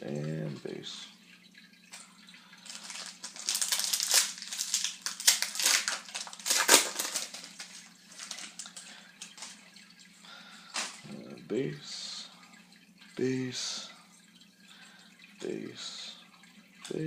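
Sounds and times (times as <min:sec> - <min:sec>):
wrapper tearing and crinkling: 0:02.7 - 0:09.6.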